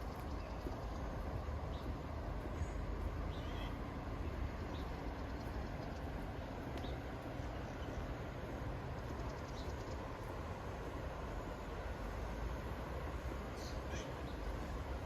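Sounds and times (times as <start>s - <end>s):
low rumble and hiss: 0.0s - 15.0s
faint bird chirps: 2.6s - 3.8s.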